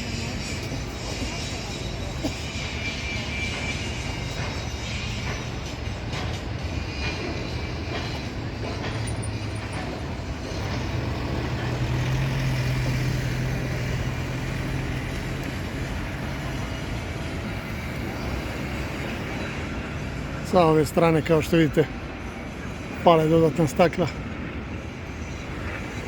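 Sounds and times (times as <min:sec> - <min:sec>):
vehicle engine rumbling: 0:00.0 - 0:20.5
city traffic noise: 0:00.0 - 0:26.0.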